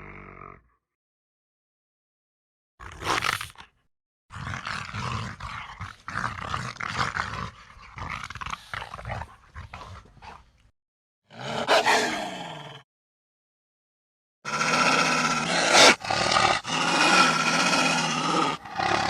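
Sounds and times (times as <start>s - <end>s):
rough pulsing creature vocalisation: 14.5s - 19.0s.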